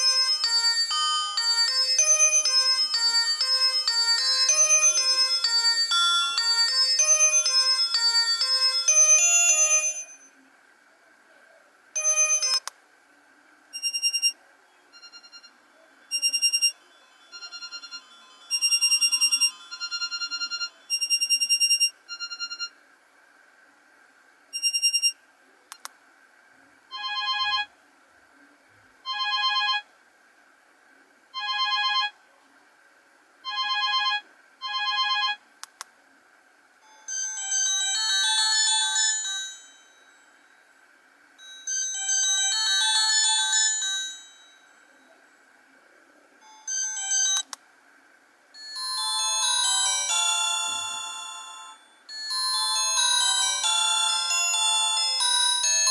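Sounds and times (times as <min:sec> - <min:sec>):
phone ringtone beeping melodies: 0:00.0 - 0:10.3, 0:12.0 - 0:12.6, 0:13.8 - 0:14.4, 0:16.1 - 0:22.7, 0:33.5 - 0:35.4, 0:36.8 - 0:40.5, 0:41.4 - 0:45.0, 0:46.4 - 0:47.5, 0:48.6 - 0:55.9.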